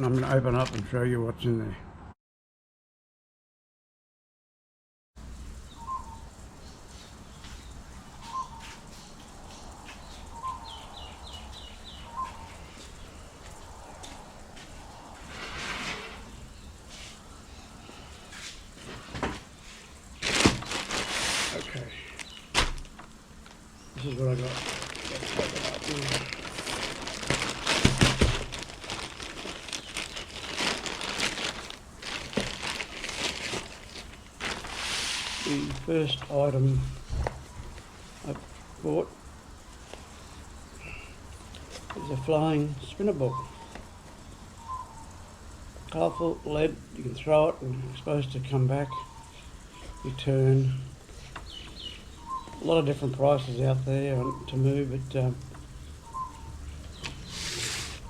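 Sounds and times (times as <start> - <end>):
birds calling: 5.6 - 58.0
packaging crinkling: 20.0 - 35.9.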